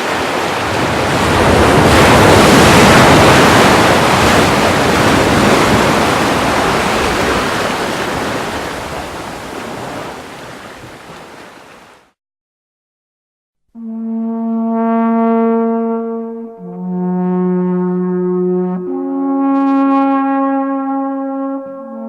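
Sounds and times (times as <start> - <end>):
ocean wave washing in: 0.0 - 12.1.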